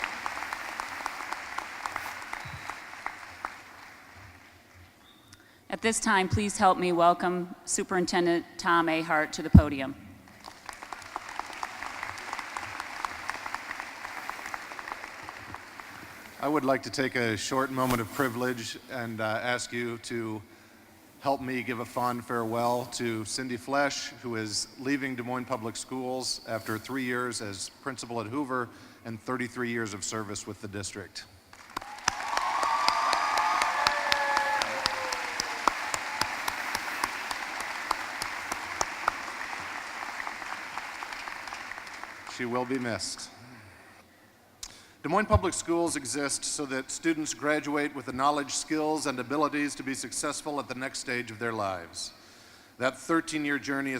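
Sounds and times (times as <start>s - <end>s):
audience cheering: 0.0s - 3.9s, 31.6s - 42.9s
audience applauding: 0.0s - 4.7s, 10.3s - 16.6s, 31.5s - 43.0s.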